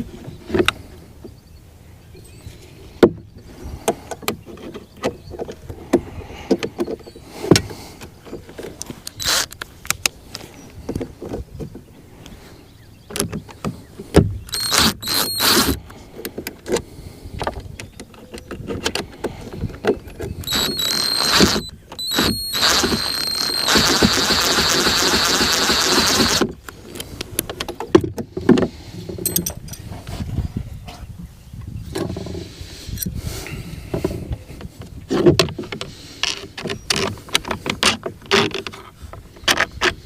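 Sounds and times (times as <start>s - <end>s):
tools and metal parts clicking: 14.5s - 15.8s, 20.4s - 26.4s, 29.2s - 29.9s.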